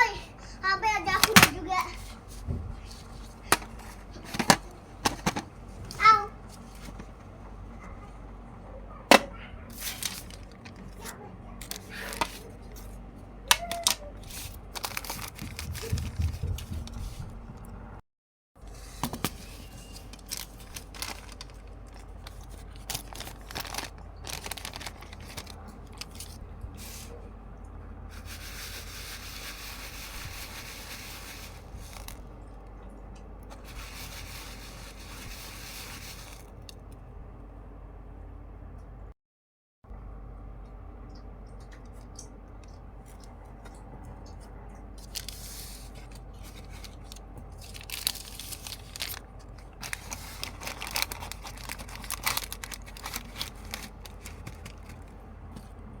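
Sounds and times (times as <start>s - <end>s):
packaging rustling: 9.7s - 11.0s, 11.6s - 17.2s, 19.0s - 27.0s, 28.7s - 32.3s, 45.0s - 55.2s.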